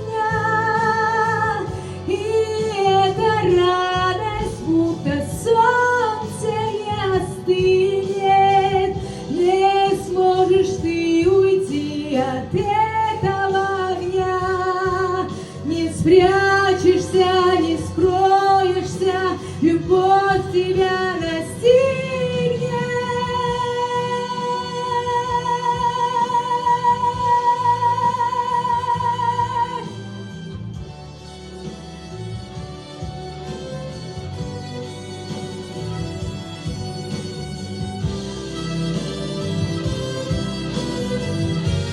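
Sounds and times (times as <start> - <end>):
woman singing: 0.0 - 30.1
instrumental accompaniment: 0.0 - 41.9.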